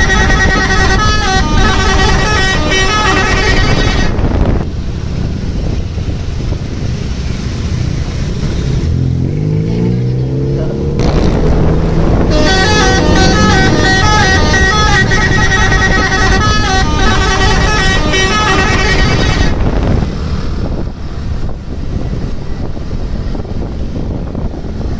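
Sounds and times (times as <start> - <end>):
bus multi-tone horn tune: 0.0 - 4.5, 12.1 - 19.9
engine revving: 6.5 - 22.2.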